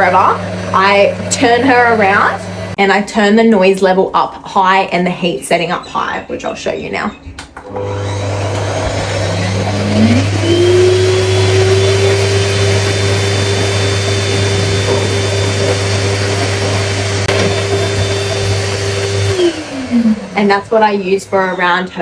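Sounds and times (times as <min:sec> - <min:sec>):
pet dryer motor whine: 0:00.0 - 0:02.8, 0:07.6 - 0:22.0.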